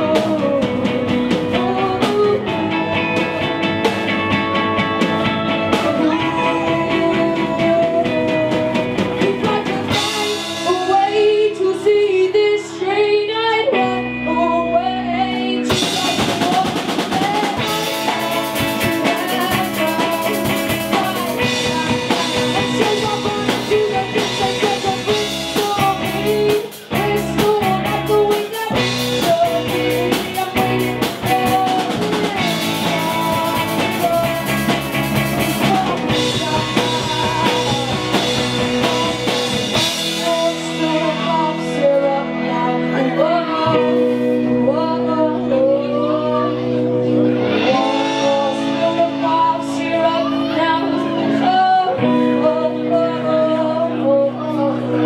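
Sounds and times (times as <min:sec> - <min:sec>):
drum kit: 0:00.0 - 0:11.7, 0:15.6 - 0:45.1, 0:47.3 - 0:50.0
electric guitar: 0:00.0 - 0:55.0
person singing: 0:00.0 - 0:55.0.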